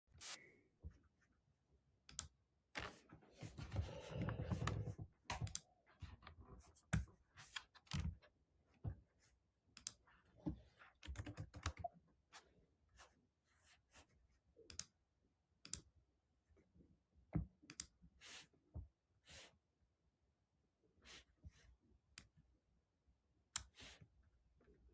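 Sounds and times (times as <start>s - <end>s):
typing on a computer keyboard: 11.0s - 12.0s.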